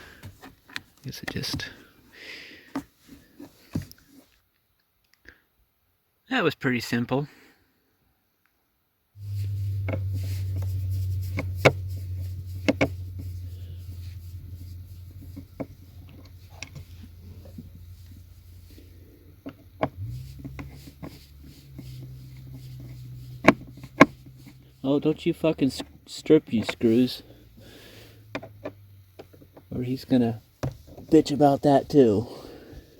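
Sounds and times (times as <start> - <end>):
steady low hum: 9.2 - 32.9.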